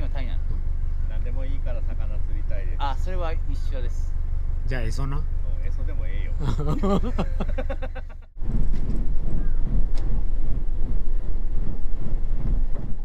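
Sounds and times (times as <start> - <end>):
wind buffeting microphone: 8.4 - 13.0.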